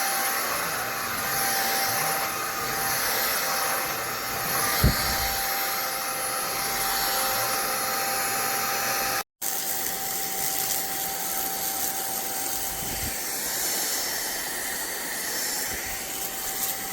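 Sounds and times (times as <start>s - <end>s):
stick vacuum running: 0.0s - 9.2s.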